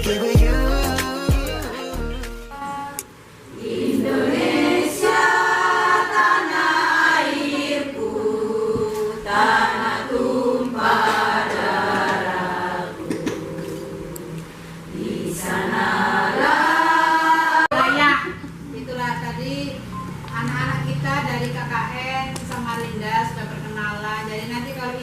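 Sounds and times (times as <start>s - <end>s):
choir singing held chords: 0.0s - 18.0s.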